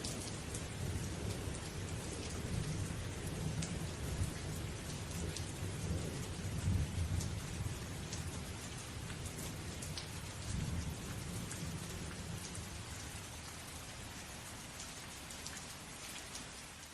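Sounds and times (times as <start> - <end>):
steady rain: 0.0 - 16.9.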